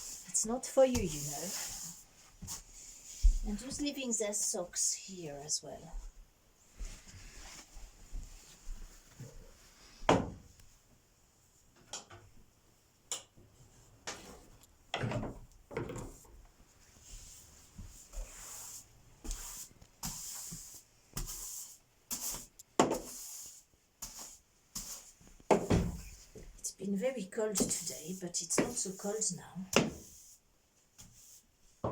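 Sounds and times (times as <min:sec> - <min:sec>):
household knocks and thumps: 0:25.5 - 0:26.6.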